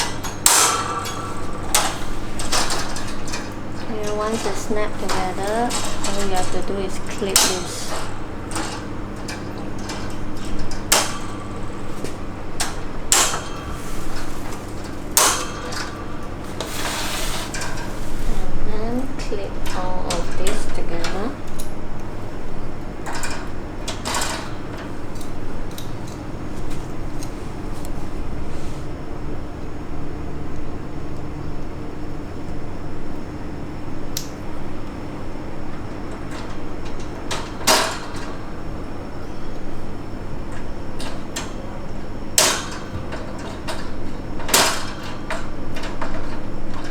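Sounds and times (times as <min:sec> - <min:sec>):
handling rattle of parts: 0:00.0 - 0:28.6, 0:35.4 - 0:46.9
steady hum: 0:00.0 - 0:46.9
rough snap: 0:34.2 - 0:34.4.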